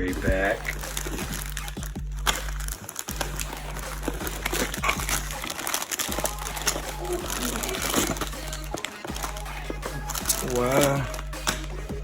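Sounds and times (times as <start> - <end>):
plastic packaging crinkling: 0.2 - 11.8.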